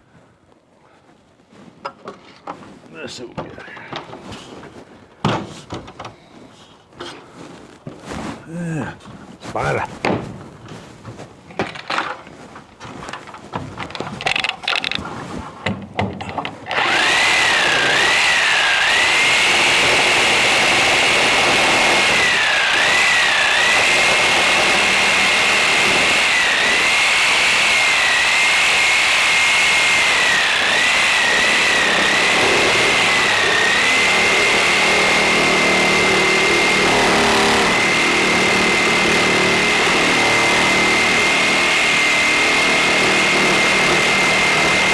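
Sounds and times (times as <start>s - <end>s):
handling knocks and clatter: 10.0s - 17.4s
power saw motor whine: 16.1s - 44.9s.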